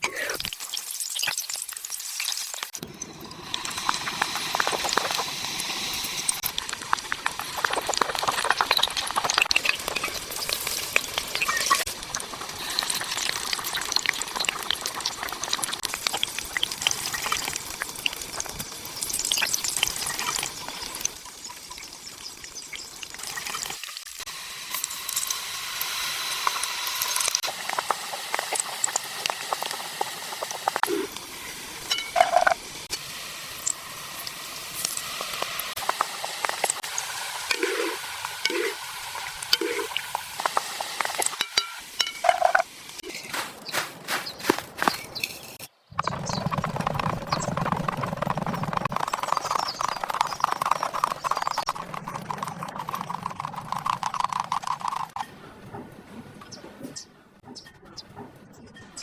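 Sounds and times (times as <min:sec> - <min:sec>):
hot oil sizzling in frying pan: 0:00.4 - 0:43.0.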